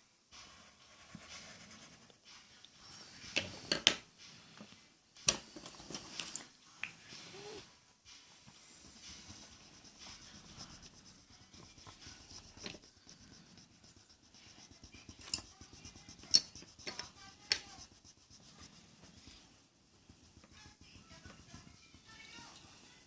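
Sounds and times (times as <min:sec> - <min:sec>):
drawing on paper: 0:00.3 - 0:03.4, 0:08.5 - 0:23.0.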